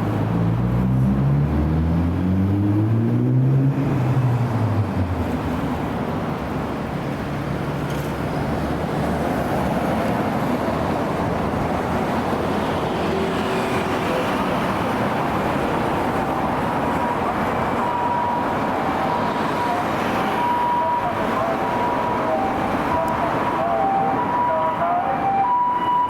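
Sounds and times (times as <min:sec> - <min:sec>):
road traffic noise: 0:00.0 - 0:26.0
ambulance two-tone siren: 0:16.4 - 0:26.0.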